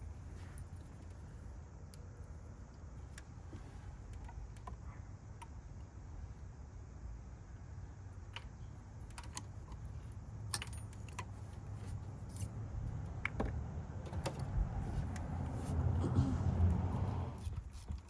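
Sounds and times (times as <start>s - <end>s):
low background rumble: 0.0s - 17.9s.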